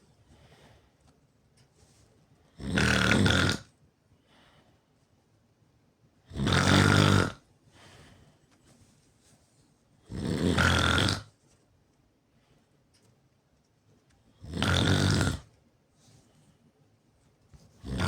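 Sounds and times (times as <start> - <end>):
faint breaths: 0.0 - 2.5, 4.1 - 5.2, 7.6 - 9.8, 15.9 - 17.0
person snoring loudly: 2.6 - 3.7, 6.3 - 7.4, 10.1 - 11.3, 14.4 - 15.5.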